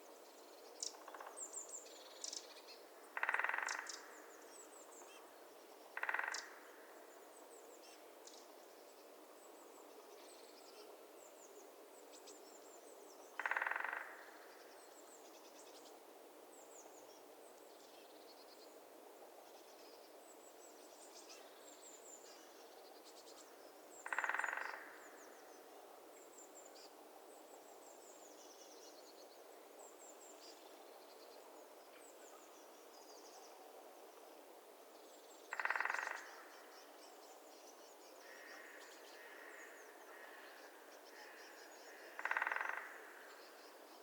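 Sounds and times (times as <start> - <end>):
soft steady swamp hiss: 0.0 - 44.0
woodpecker drumming: 3.2 - 3.8, 6.0 - 6.4, 13.4 - 14.1, 24.0 - 24.8, 35.5 - 36.2, 42.2 - 42.9.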